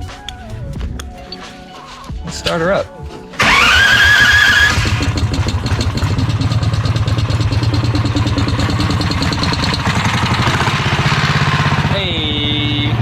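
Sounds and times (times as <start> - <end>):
go-kart engine starting and idling: 3.4 - 13.0.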